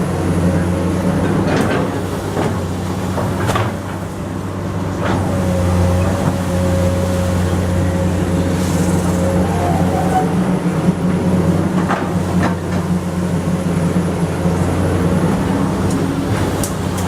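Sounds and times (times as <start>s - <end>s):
excavator diesel engine: 0.0s - 17.0s
hydraulic whine: 0.9s - 17.0s.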